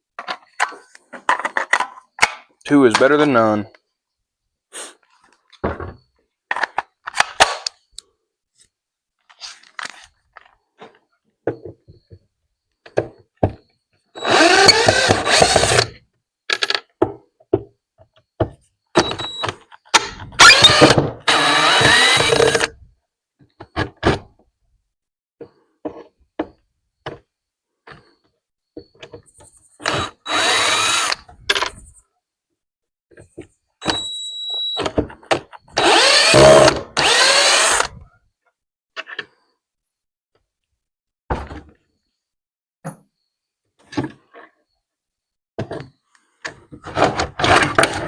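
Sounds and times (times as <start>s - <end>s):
clicks and knocks of parts: 0.2s - 3.2s, 6.5s - 8.1s
power drill running: 14.2s - 15.9s, 20.4s - 22.7s, 29.8s - 31.3s, 35.8s - 37.9s.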